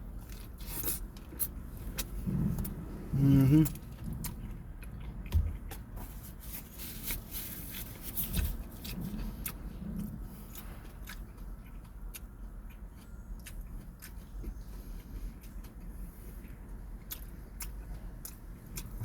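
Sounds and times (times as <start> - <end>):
steady low rumble: 0.0 - 19.0
chewing with wet mouth clicks: 0.2 - 2.9, 3.6 - 6.0, 7.8 - 19.0.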